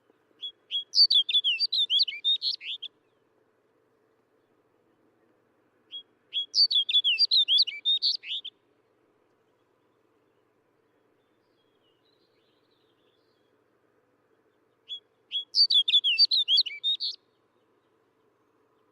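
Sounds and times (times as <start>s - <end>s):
bird singing warbled whistles: 0.4s - 2.9s, 5.9s - 8.5s, 14.9s - 17.2s.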